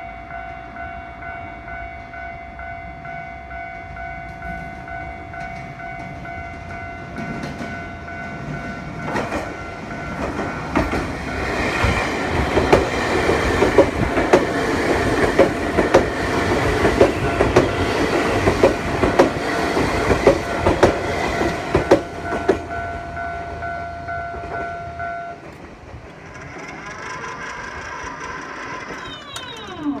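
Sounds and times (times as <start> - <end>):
level-crossing warning bell: 0.0 - 25.6, 28.7 - 30.0
train wheels clacking: 3.9 - 30.0.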